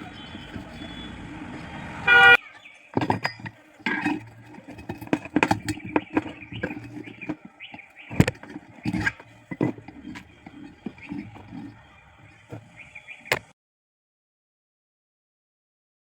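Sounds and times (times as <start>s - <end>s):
clicks and knocks: 3.0s - 11.8s.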